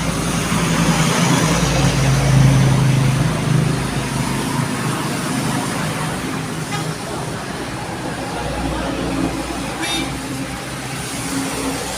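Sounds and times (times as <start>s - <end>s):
bus air horn long low blast: 6.6s - 7.1s, 9.7s - 10.3s.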